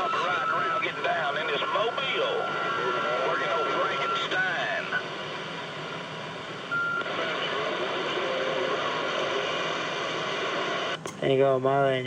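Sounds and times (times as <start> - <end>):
distant voice over radio: 0.0 - 5.0
radio static hiss: 0.0 - 12.0.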